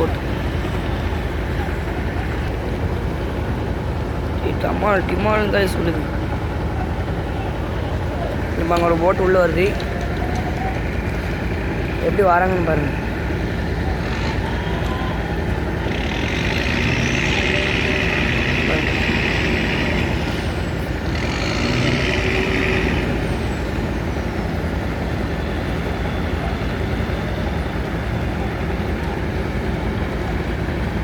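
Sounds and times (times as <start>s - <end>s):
boat engine rumbling: 0.0s - 31.0s
loud hissing: 15.7s - 24.5s.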